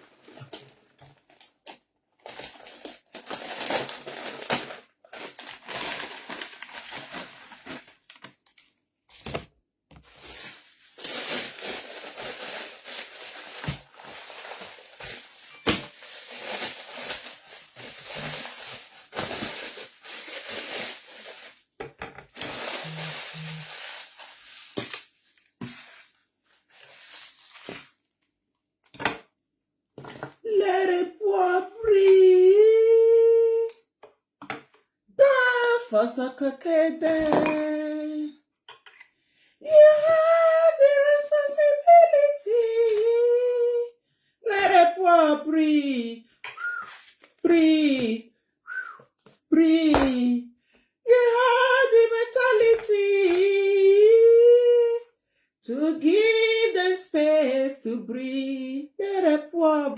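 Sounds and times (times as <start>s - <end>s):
food packaging crinkling: 1.1s - 8.7s, 10.0s - 25.8s, 26.6s - 28.1s.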